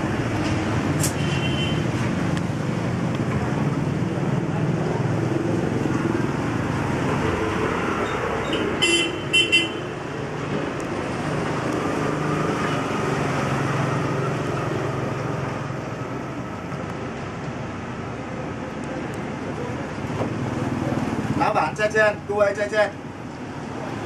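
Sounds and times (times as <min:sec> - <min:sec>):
road traffic: 0:00.0 - 0:24.0
vehicle horn tooting: 0:08.5 - 0:09.8.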